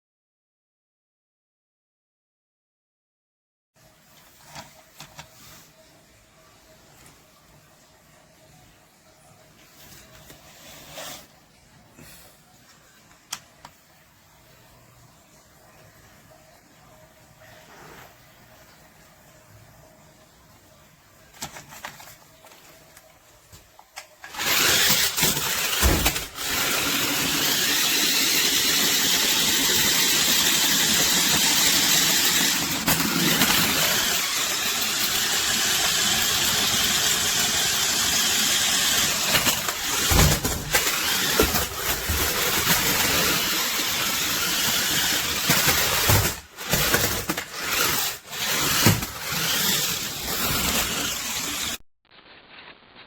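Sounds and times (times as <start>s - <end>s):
toy car motor whirring: 24.2s - 51.8s
toy car knocking: 24.3s - 34.4s, 35.5s - 51.4s.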